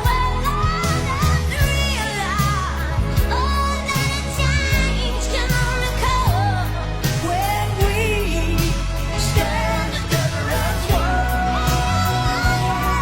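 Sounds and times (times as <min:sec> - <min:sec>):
pop song with singing: 0:00.0 - 0:13.0.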